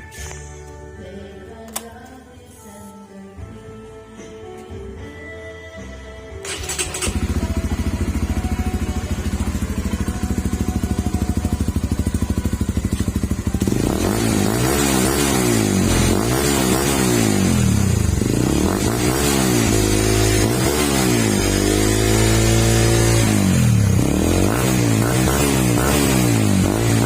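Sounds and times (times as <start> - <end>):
click: 1.6 - 2.2
motorcycle engine idling and revving: 6.4 - 27.0.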